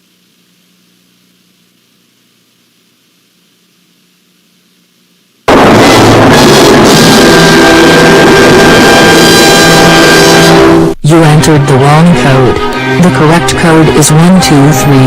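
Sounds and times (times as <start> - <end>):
faint low hum: 0.0 - 5.5
loud distorted music blast: 5.5 - 15.0.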